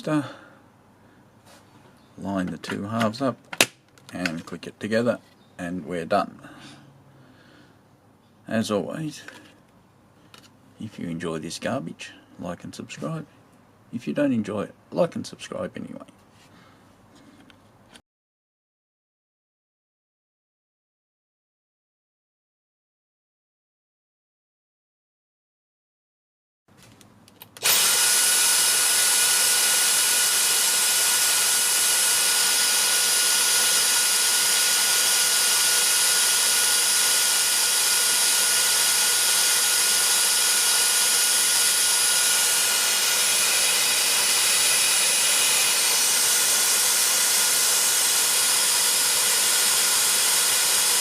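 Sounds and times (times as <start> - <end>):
stick vacuum motor whine: 27.5 - 51.0.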